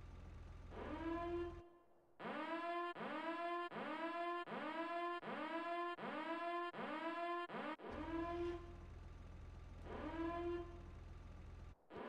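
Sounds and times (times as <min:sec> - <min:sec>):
electronic siren whooping: 0:00.7 - 0:01.6, 0:02.2 - 0:08.8, 0:09.8 - 0:11.1.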